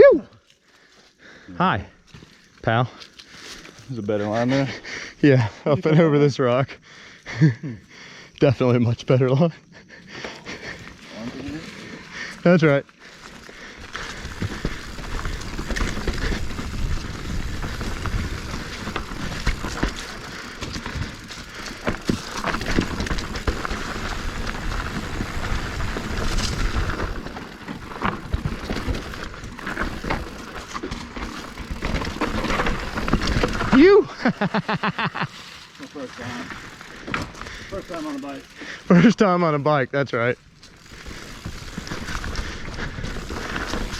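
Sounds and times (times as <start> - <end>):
bike tyres rolling on dirt: 0.0 - 43.9
bike clattering over rough ground: 10.0 - 43.9.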